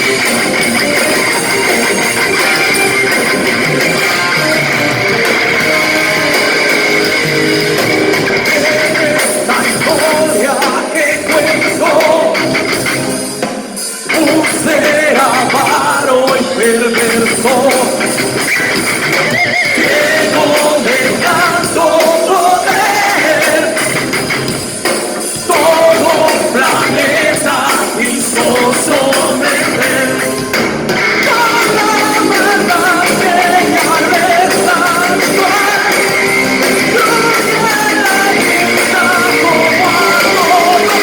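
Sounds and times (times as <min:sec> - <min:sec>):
rock guitars: 0:00.0 - 0:41.0
person singing: 0:03.6 - 0:06.8, 0:08.3 - 0:12.7, 0:13.9 - 0:18.1, 0:19.7 - 0:24.0, 0:25.4 - 0:30.5, 0:31.2 - 0:41.0.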